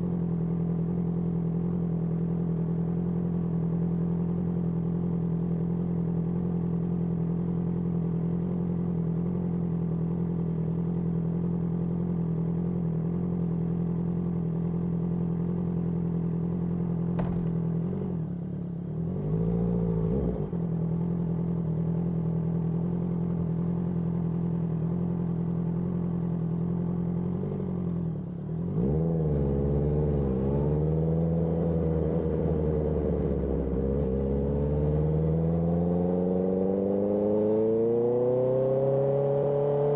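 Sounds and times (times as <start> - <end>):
motorcycle engine revving: 17.2 - 17.8.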